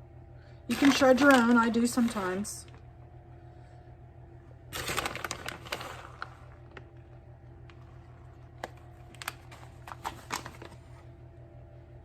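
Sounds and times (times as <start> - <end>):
steady low hum: 0.0 - 12.0
plastic bag crinkling: 0.7 - 2.5, 4.8 - 11.0.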